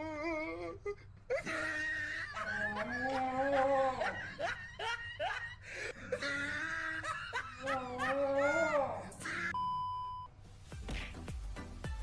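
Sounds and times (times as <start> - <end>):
electronic beep: 9.6 - 10.3.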